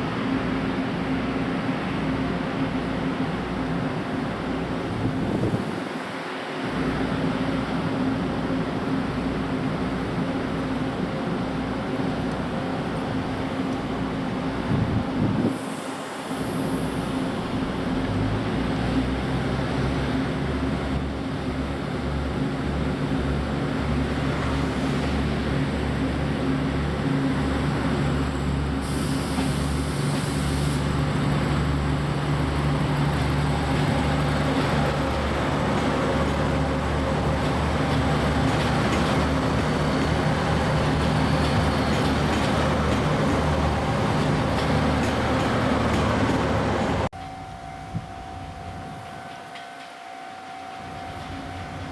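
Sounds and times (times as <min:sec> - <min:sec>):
diesel railcar engine running: 0:00.0 - 0:51.9
brief hiss: 0:28.8 - 0:30.9.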